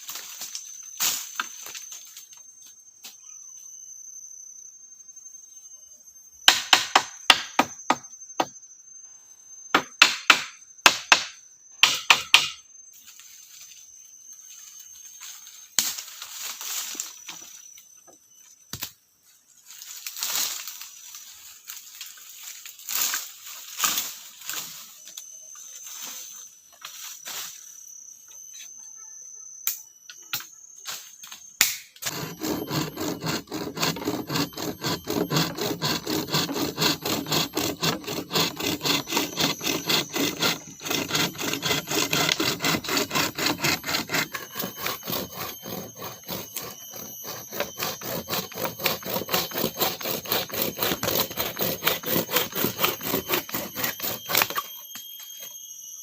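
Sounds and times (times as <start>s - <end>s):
high insect drone: 0.0s - 56.0s
tool striking wood: 6.5s - 8.5s, 9.7s - 12.6s
branches and leaves rustling: 19.6s - 25.0s
sawing wood: 32.0s - 55.5s.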